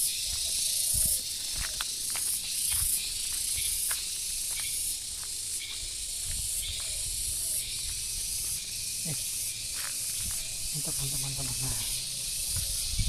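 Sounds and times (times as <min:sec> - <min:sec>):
insects buzzing: 0:00.0 - 0:13.0.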